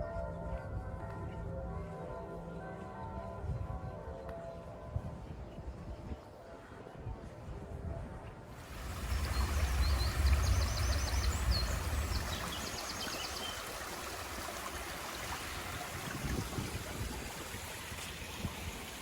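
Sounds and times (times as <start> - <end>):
wind buffeting microphone: 4.9 - 19.0
flowing water rushing: 8.6 - 19.0
songbird trilling: 8.8 - 13.7.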